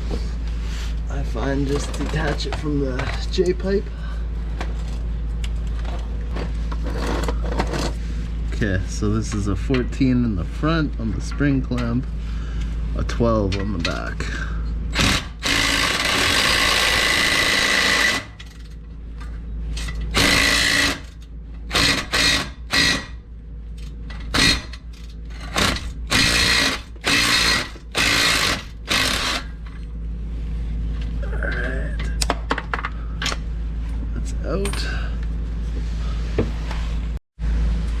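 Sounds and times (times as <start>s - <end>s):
power wrench running: 14.9s - 18.8s, 19.7s - 23.2s, 23.8s - 29.7s.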